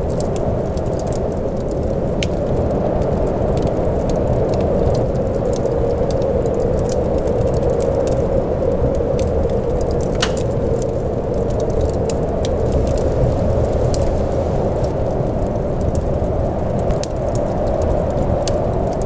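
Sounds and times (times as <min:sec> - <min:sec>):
raindrops ticking: 0:00.0 - 0:14.1
steady rain: 0:00.0 - 0:19.0.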